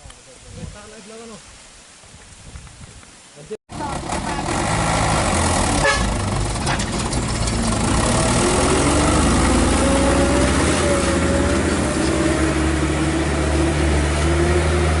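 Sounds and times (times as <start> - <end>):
diesel engine running: 3.7 - 15.0.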